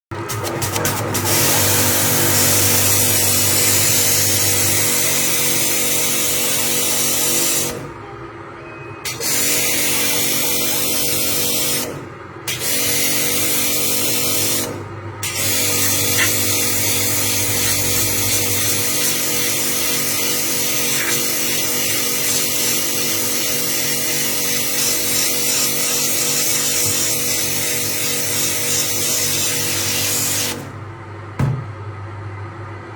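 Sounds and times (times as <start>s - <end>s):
motor running with loud hiss: 0.4s - 7.7s, 12.6s - 30.6s.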